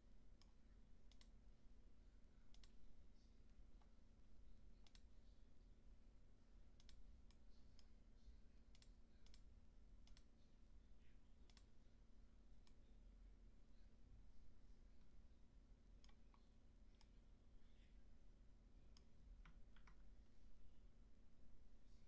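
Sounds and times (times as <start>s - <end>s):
computer mouse clicks: 0.4s - 1.4s, 2.5s - 2.8s, 4.8s - 5.1s, 6.8s - 8.0s, 8.6s - 10.4s, 11.4s - 11.7s, 16.0s - 17.2s, 18.9s - 20.2s.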